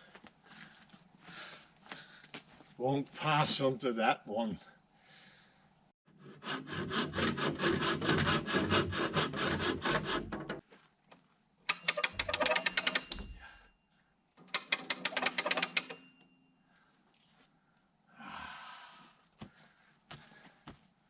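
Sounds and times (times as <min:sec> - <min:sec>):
hand tool rasping wood: 0:06.2 - 0:10.6, 0:11.7 - 0:13.1.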